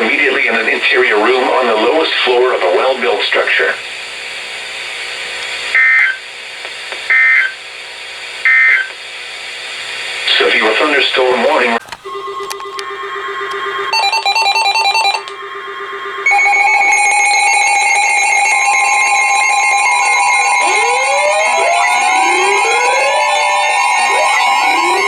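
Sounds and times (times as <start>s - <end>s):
steady low tone: 12.0s - 25.0s
two-tone attention signal: 12.0s - 25.0s
buzzy data burst: 12.1s - 25.0s.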